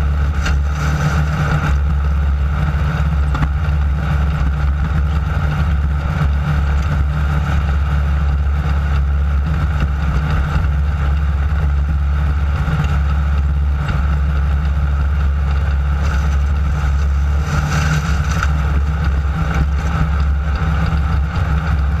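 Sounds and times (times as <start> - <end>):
buggy engine droning: 0.0 - 22.0
rough road and chassis noise: 0.0 - 22.0.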